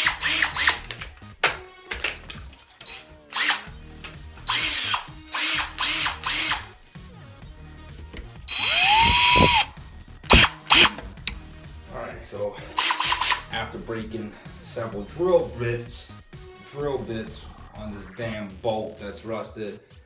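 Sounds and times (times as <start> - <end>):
electric drill whining: 0.0 - 6.8, 8.4 - 9.7, 10.3 - 11.0, 12.7 - 13.6.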